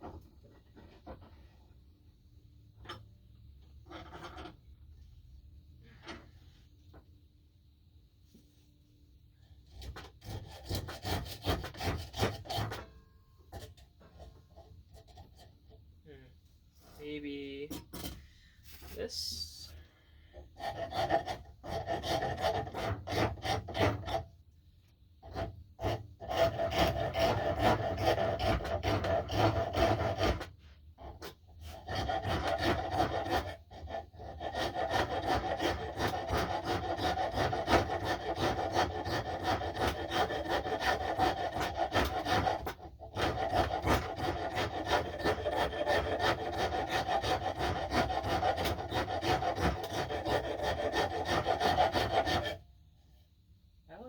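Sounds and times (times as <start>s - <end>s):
tool rasping wood: 9.7s - 12.8s, 20.3s - 24.3s, 25.2s - 52.6s.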